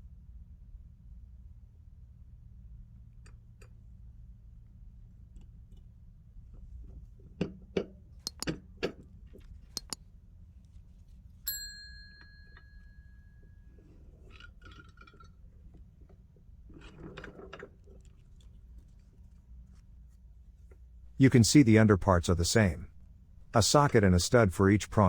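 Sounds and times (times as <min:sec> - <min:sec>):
metal snap buttons clicking: 0:08.3 - 0:08.5.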